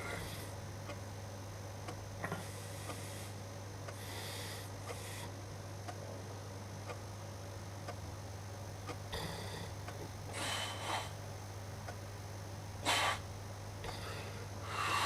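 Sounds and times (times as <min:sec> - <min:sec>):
steady low hum: 0:00.0 - 0:15.0
man breathing softly: 0:02.4 - 0:05.4, 0:13.8 - 0:15.0.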